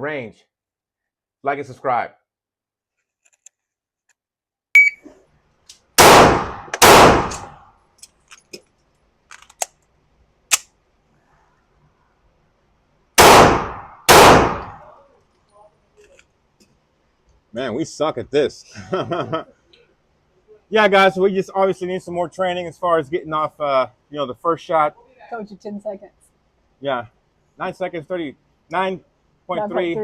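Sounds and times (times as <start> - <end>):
shot timer beep: 4.8 - 5.0
handgun shots: 6.0 - 7.6, 13.2 - 14.8.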